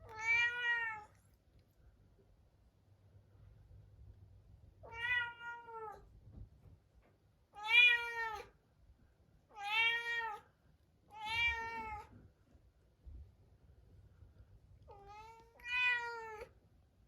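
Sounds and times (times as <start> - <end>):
cat meowing: 0.0 - 1.2, 4.8 - 6.0, 7.6 - 8.5, 9.5 - 10.5, 11.1 - 12.1, 14.9 - 16.5.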